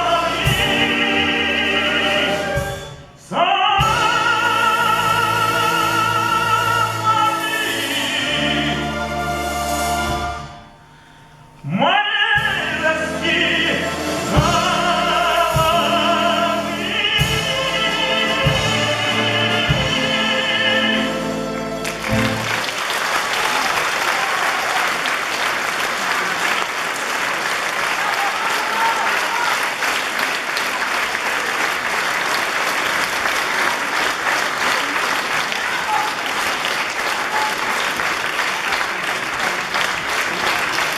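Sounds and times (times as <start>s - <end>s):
operatic singing with accompaniment: 0.0s - 22.6s
audience applause: 21.5s - 40.9s.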